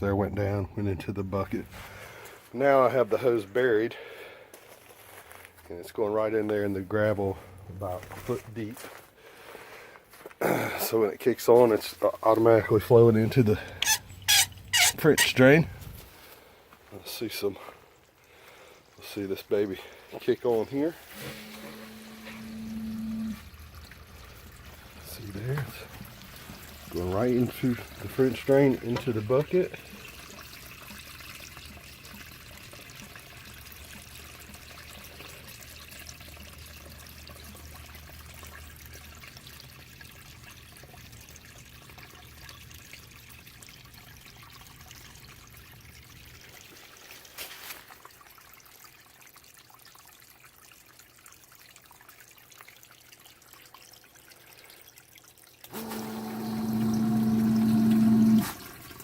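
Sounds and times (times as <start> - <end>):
water trickling into a bucket: 0.0 - 59.0
sump pump humming: 12.5 - 16.0, 20.9 - 46.8, 55.6 - 59.0.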